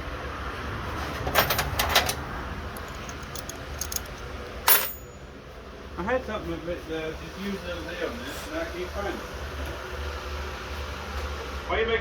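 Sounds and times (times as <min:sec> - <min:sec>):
metal hand tools clinking: 0:02.8 - 0:05.2.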